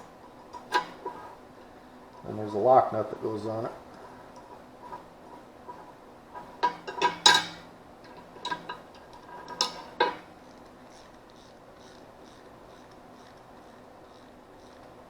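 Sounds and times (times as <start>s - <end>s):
metal tools clinking: 6.4s - 10.2s.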